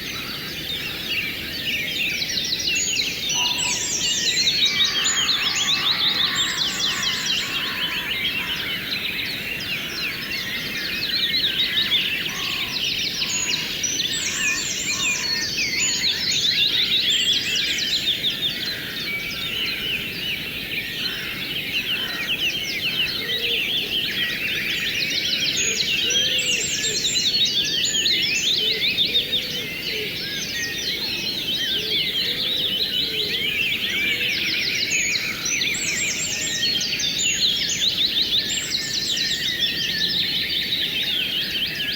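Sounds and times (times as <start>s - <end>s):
birds chirping and trilling: 0.0s - 41.9s.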